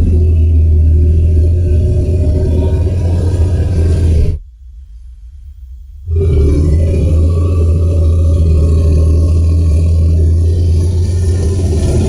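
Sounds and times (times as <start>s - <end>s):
deep rumbling creature call: 0.0s - 4.4s, 6.0s - 12.0s
faint low rumble: 0.0s - 12.0s.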